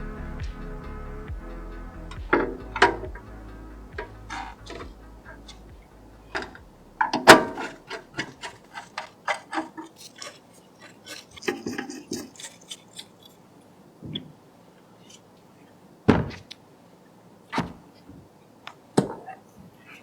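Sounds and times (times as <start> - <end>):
computer parts clicking and knocking: 3.9 - 10.4.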